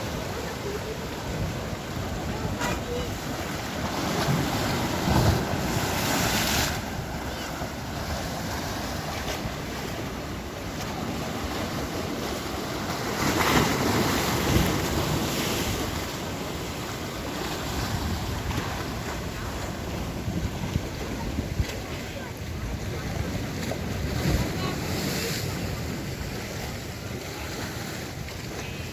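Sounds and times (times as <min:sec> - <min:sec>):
ocean surf breaking: 0:00.0 - 0:28.9
wind buffeting microphone: 0:13.8 - 0:27.6.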